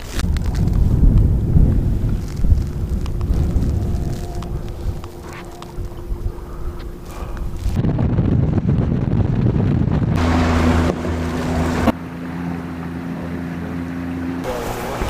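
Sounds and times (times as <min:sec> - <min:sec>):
wind buffeting microphone: 0:00.0 - 0:12.2
boat motor humming: 0:00.0 - 0:15.0.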